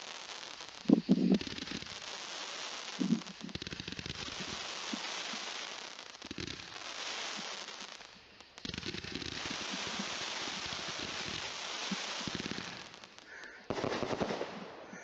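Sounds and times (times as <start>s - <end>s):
fireworks crackling and popping: 0.0s - 15.0s.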